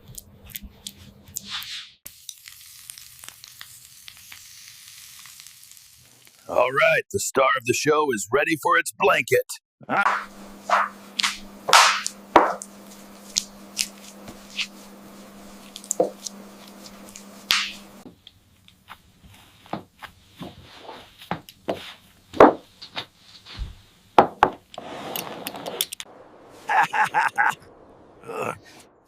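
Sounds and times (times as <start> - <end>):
low steady hum: 9.9 - 18.0
hands working meat and pastry: 10.0 - 24.8.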